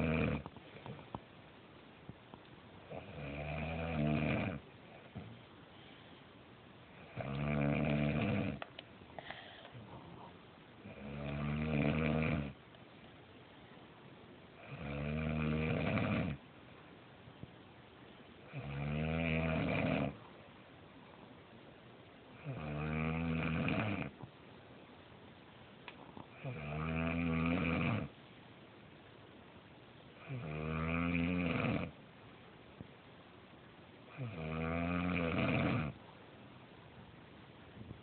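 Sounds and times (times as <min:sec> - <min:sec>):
woman snoring: 0:00.0 - 0:00.5, 0:02.9 - 0:04.6, 0:07.1 - 0:08.6, 0:10.9 - 0:12.6, 0:14.6 - 0:16.4, 0:18.5 - 0:20.2, 0:30.2 - 0:31.9, 0:34.2 - 0:36.0.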